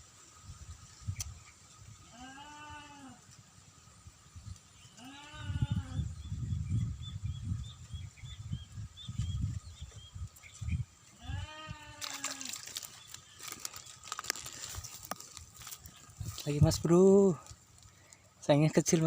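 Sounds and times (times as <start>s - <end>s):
goat bleating: 2.1s - 3.2s, 5.0s - 6.0s, 11.2s - 12.7s
dense crackling clicks: 12.0s - 16.5s.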